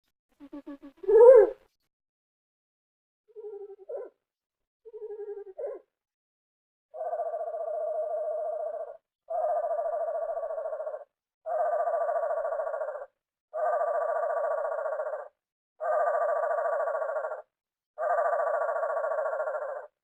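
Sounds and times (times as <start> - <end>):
rapidly pulsing bird-like call: 0.4 - 1.7, 6.9 - 20.0.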